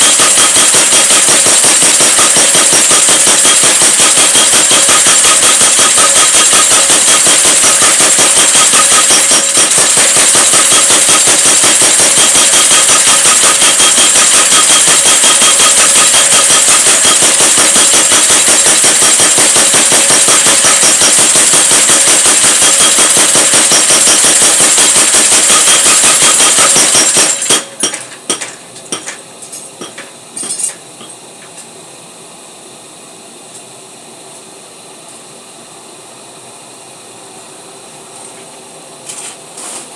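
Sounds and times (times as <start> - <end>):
power hammer pounding metal: 0.0 - 31.2.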